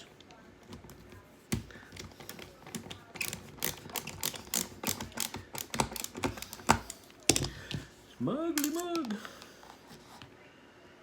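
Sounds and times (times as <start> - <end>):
small parts and tools clattering: 8.6 - 9.3.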